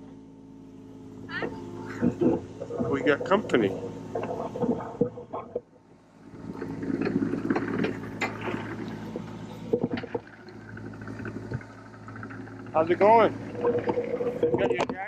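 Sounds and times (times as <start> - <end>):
diesel excavator engine running: 0.0 - 15.0
knocks and rattles: 1.9 - 5.7, 6.4 - 15.0.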